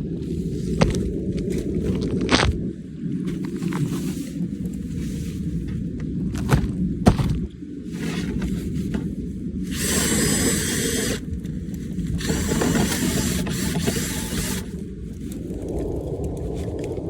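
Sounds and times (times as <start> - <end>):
rattling scraping in duct: 7.9 - 11.3, 12.2 - 14.9.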